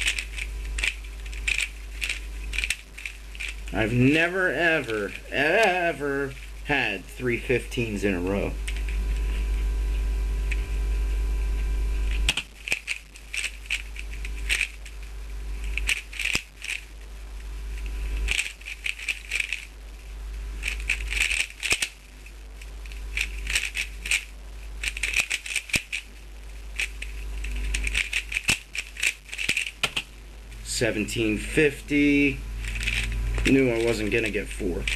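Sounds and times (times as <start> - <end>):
plastic puzzle cube clicking: 0.0 - 3.8, 12.2 - 14.9, 15.7 - 16.9, 18.3 - 19.7, 20.6 - 22.0, 22.9 - 26.1, 26.8 - 30.1.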